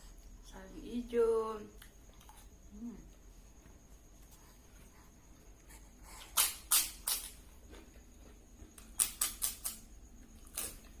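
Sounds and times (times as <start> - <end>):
eating clicks and smacks: 8.6 - 10.9.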